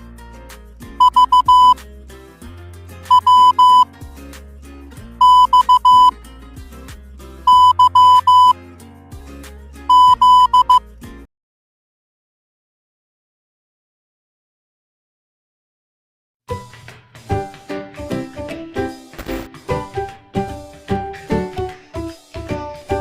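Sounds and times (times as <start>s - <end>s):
background music with bass: 0.0s - 11.3s, 16.5s - 23.0s
morse code beeps: 1.0s - 1.8s, 3.1s - 3.9s, 5.2s - 6.1s, 7.5s - 8.6s, 9.9s - 10.8s.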